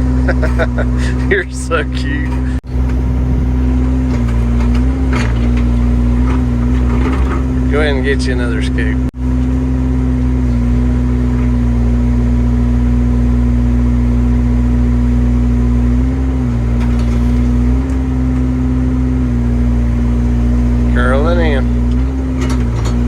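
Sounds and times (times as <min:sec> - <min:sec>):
diesel engine under load: 0:00.0 - 0:23.0
hydraulics humming: 0:00.0 - 0:23.0.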